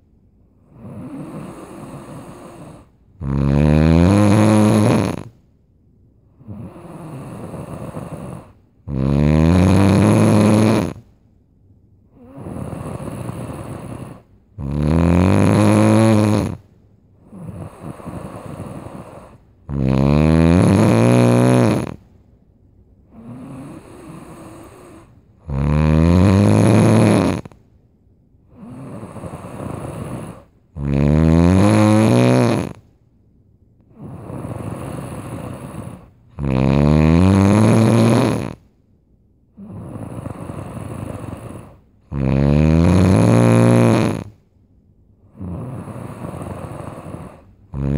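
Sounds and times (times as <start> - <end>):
soft breathing: 0.0 - 3.2, 6.2 - 8.9, 12.0 - 14.6, 16.1 - 19.8, 23.0 - 25.5, 28.4 - 30.9, 33.8 - 36.4, 39.5 - 42.2, 45.2 - 47.9
person snoring loudly: 0.7 - 5.4, 6.4 - 11.0, 12.2 - 16.6, 17.3 - 22.0, 23.1 - 27.5, 28.5 - 32.8, 33.9 - 38.6, 39.6 - 44.4, 45.3 - 47.9.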